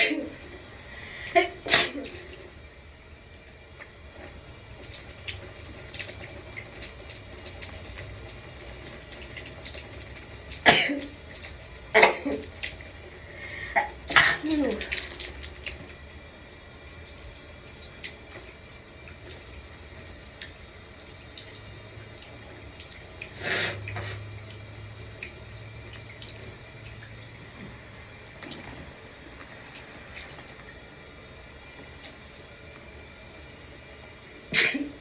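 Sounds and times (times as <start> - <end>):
water drips and splashes: 0.0 - 2.7, 3.4 - 35.0
shower water running: 0.0 - 35.0
sharp water burst: 1.0 - 2.5, 23.0 - 31.6, 34.2 - 35.0.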